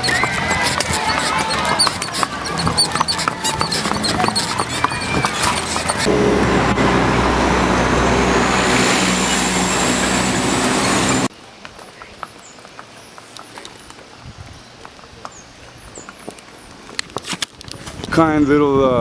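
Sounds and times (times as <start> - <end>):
scattered clicks: 0.0 - 6.1
vehicle engine and tyre noise: 0.0 - 14.2.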